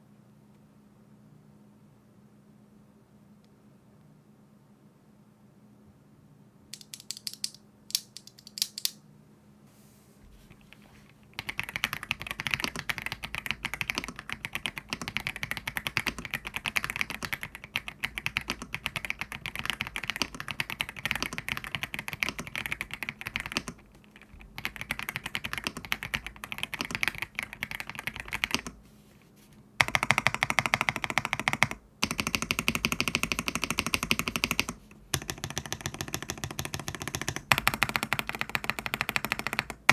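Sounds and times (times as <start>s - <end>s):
muted mechanical keyboard typing: 6.8s - 9.0s, 11.4s - 28.8s, 29.8s - 39.9s.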